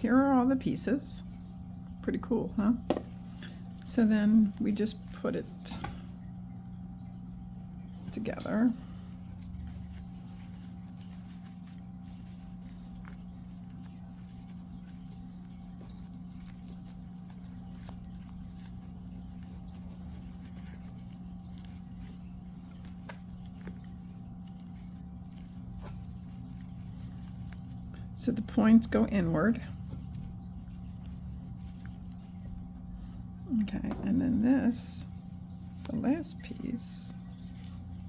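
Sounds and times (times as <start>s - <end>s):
steady low hum: 0.0s - 38.0s
yarn pieces rustling: 8.0s - 38.0s.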